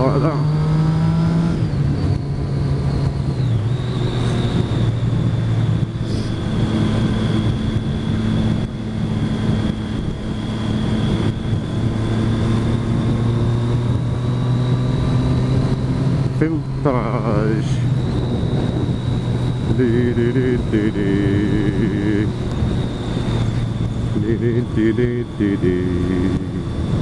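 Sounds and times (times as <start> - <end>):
motorcycle engine running: 0.0 - 27.0
wind noise: 0.0 - 27.0.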